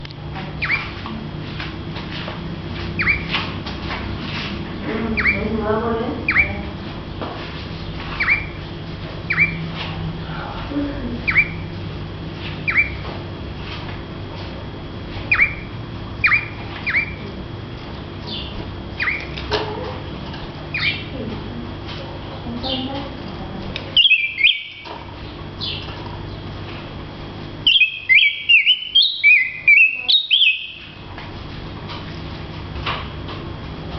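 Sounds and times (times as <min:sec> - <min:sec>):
steady low hum: 0:00.0 - 0:33.9
songbird sharp call notes: 0:03.0 - 0:03.3, 0:09.3 - 0:09.6, 0:16.2 - 0:17.2, 0:24.0 - 0:24.8, 0:27.7 - 0:30.8.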